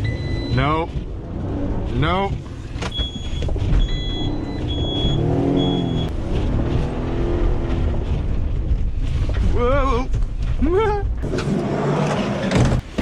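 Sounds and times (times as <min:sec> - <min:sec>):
van engine running and revving: 0:00.0 - 0:13.0
high warning chime beeping: 0:02.9 - 0:06.1.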